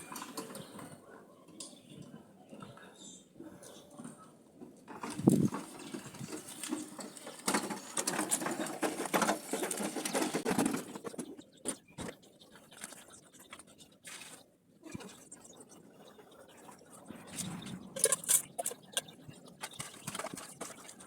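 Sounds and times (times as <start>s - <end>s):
scrapes and knocks: 4.9s - 12.2s, 17.3s - 21.0s.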